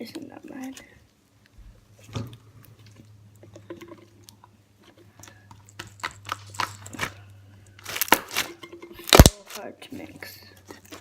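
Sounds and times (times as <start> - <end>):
low steady hum: 0.0 - 11.0
sticky slime clicks: 9.1 - 9.5.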